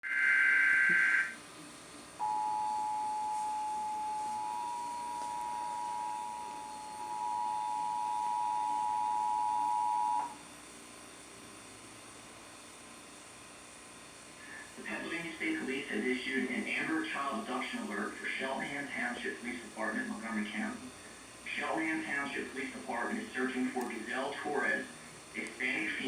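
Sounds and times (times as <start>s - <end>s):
two-tone attention signal: 0.0s - 1.4s, 2.2s - 10.4s.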